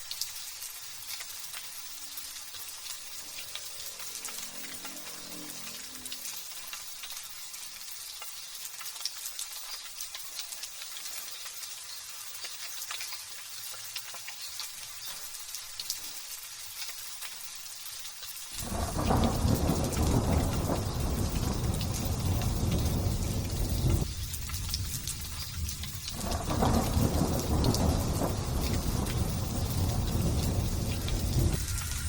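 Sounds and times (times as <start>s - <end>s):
light drizzle hissing: 0.0s - 32.0s
thunder rumbling: 18.6s - 32.0s.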